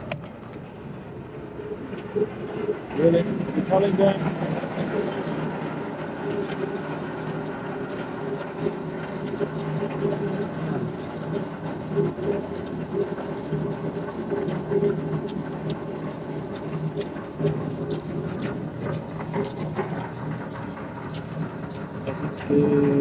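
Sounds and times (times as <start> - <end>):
air conditioning unit drone: 0.0 - 23.0.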